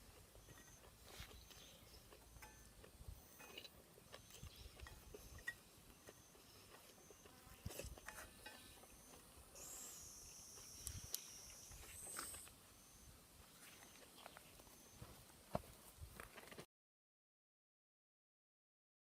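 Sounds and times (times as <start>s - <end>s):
insect chirping: 0.4s - 15.3s
high insect buzz: 9.5s - 12.5s.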